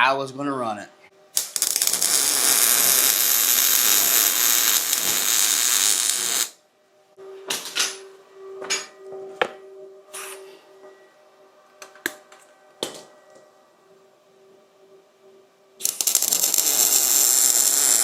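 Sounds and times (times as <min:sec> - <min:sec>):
welder arc crackling and hissing: 0:01.4 - 0:06.6, 0:15.8 - 0:18.0.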